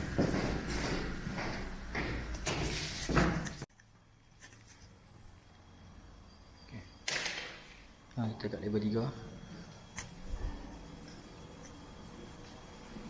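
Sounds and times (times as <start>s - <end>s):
footsteps walking down stairs: 0.0s - 3.7s.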